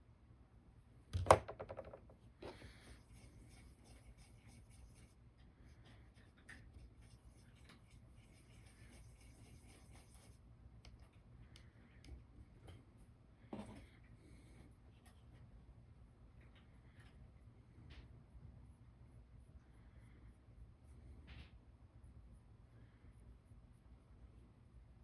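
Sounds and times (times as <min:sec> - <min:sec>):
paintbrush rubbing and scratching: 0:02.4 - 0:10.6.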